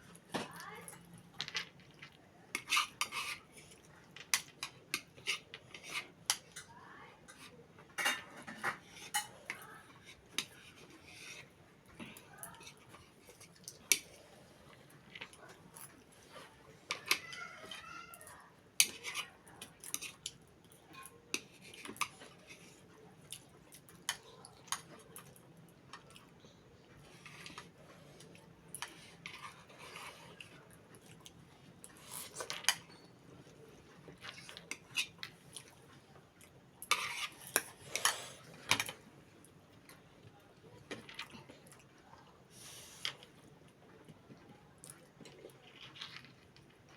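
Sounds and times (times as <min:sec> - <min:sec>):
cutlery clinking on a dish: 0:07.3 - 0:09.6.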